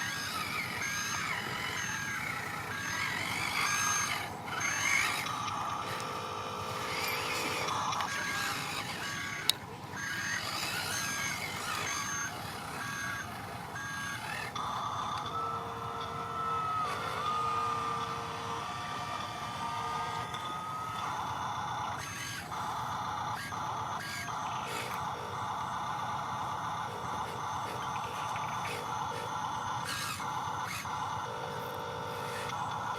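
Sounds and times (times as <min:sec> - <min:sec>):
electronic reversing alarm beeps: 0:00.0 - 0:23.0
steady high whine: 0:00.0 - 0:32.9.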